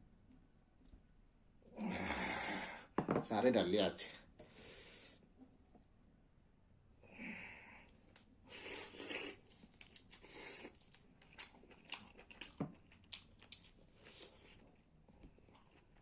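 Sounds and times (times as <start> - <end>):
wet chewing clicks and smacks: 9.4 - 16.0.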